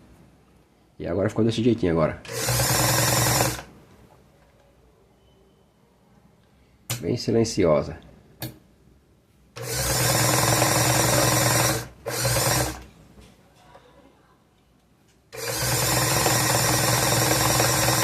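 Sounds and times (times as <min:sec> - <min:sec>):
sewing machine running: 0:02.3 - 0:03.7, 0:09.6 - 0:12.9, 0:15.3 - 0:18.0.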